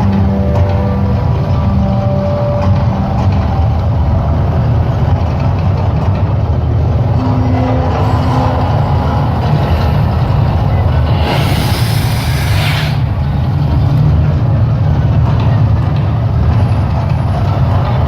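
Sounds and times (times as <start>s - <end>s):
deep rumble: 0.0s - 18.0s
held musical tones: 6.4s - 18.0s.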